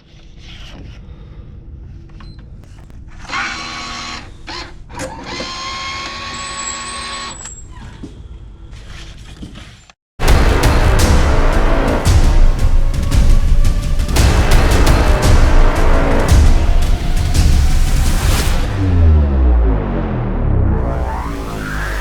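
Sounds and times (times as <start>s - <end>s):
sharp knock: 10.2s - 19.2s
machinery rumbling: 10.2s - 22.0s
whining tones: 10.4s - 22.0s.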